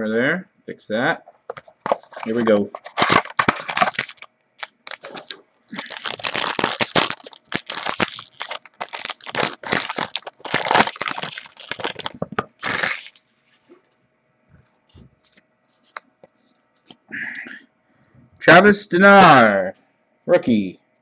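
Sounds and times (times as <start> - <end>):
packaging crinkling: 1.5 - 13.2.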